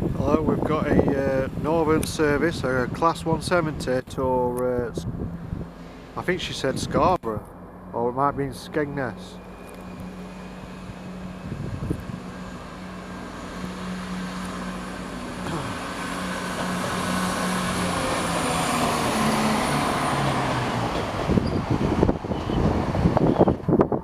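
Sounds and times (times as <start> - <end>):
wind buffeting microphone: 0.0 - 7.6, 9.8 - 13.8, 20.1 - 24.0
train diesel engines droning: 1.2 - 23.7.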